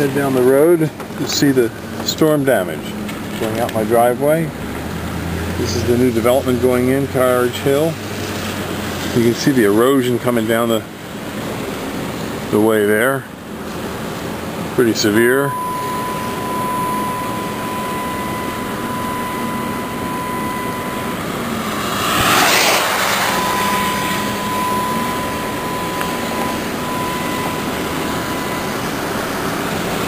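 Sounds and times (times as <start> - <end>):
car road and wind noise: 0.0 - 30.0
thin high tone: 14.8 - 30.0.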